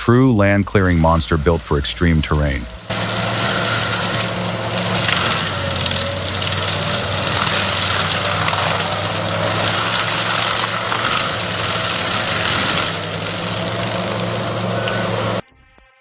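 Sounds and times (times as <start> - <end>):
heavy machine engine droning: 0.0 - 15.5.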